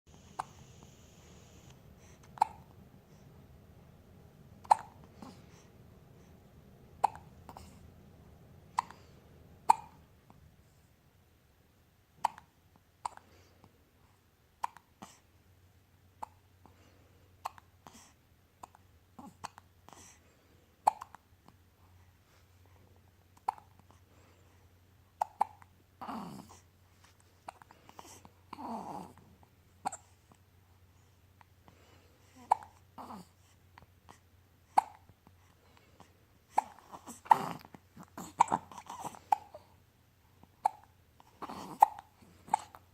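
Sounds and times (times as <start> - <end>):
breathing and small vocal noises: 0.1 - 11.2, 12.1 - 42.9
person hiccuping: 2.3 - 2.7, 4.6 - 5.4, 7.0 - 7.7, 9.6 - 10.0, 40.6 - 42.8.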